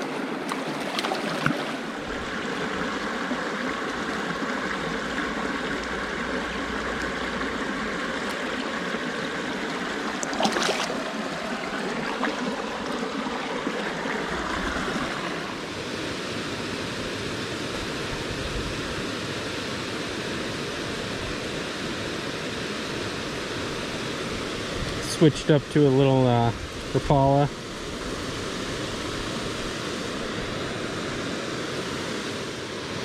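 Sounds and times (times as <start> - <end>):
stream rushing over rocks: 0.0 - 16.6.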